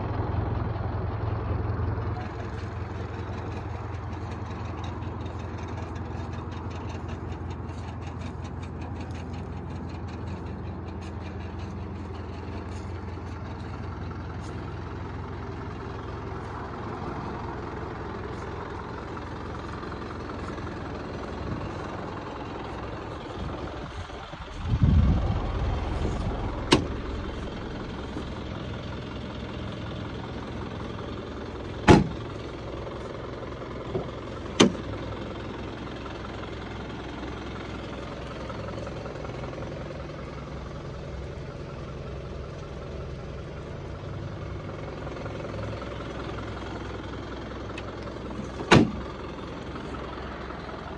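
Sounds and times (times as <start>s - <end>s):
truck engine idling: 0.0s - 50.9s
low rumble: 2.4s - 30.2s.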